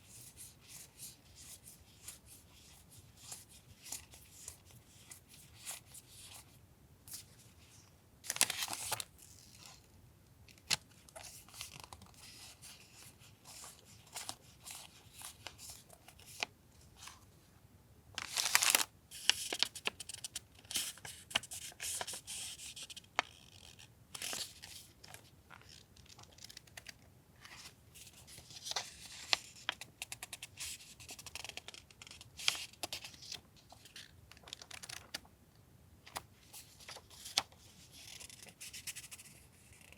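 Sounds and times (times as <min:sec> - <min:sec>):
paper rustling and crinkling: 0:08.2 - 0:09.8, 0:18.2 - 0:29.9, 0:30.6 - 0:35.3.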